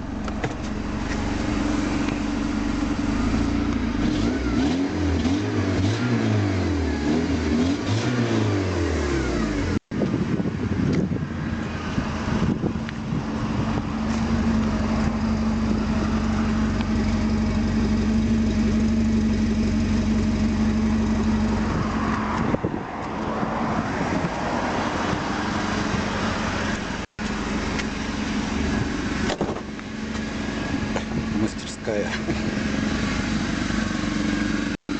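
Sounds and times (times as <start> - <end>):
petrol engine idling: 0.0 - 4.0, 11.5 - 21.8, 25.5 - 34.9.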